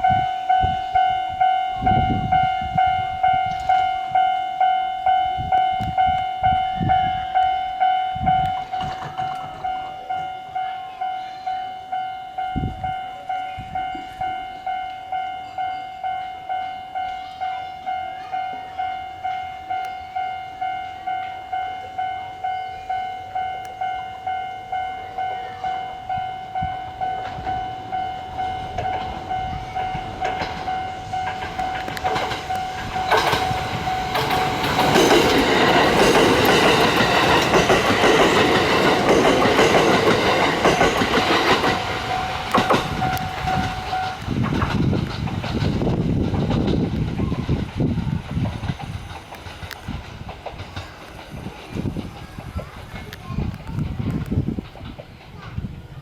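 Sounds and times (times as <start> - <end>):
level-crossing alarm dings: 0.0 - 44.8
train wheels rushing and clattering: 7.9 - 10.0, 26.1 - 56.0.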